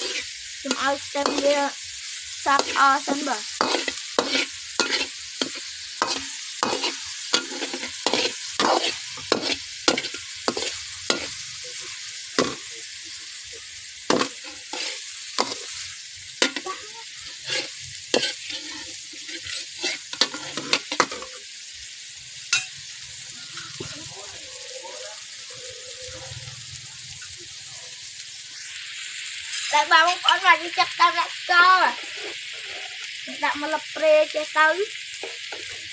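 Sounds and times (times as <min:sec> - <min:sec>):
spatula scraping and knocking pan: 0:00.0 - 0:01.5, 0:03.6 - 0:11.4, 0:12.4 - 0:12.6, 0:14.1 - 0:15.7, 0:17.3 - 0:21.4
food sizzling in a pan: 0:00.0 - 0:35.9.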